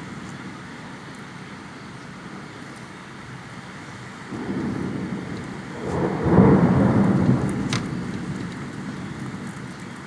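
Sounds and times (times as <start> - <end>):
rain hissing: 4.3 - 9.4
thunder rumbling: 4.3 - 9.5.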